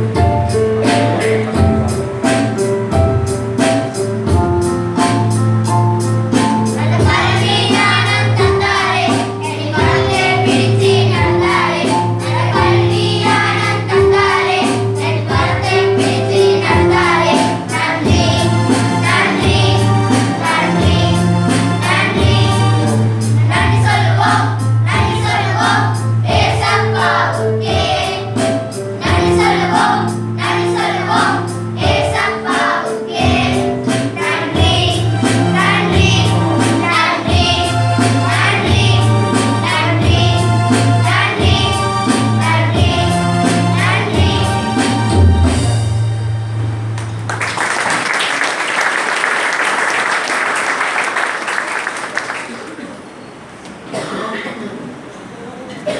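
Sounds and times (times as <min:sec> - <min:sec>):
held bass notes: 0:00.0 - 0:28.3, 0:33.1 - 0:47.3
steady beat: 0:00.0 - 0:45.9
choir singing a church song: 0:04.3 - 0:46.1.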